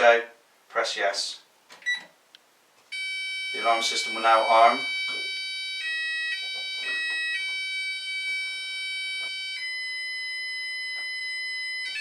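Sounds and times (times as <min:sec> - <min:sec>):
electronic alarm arming tone: 0:02.9 - 0:12.0.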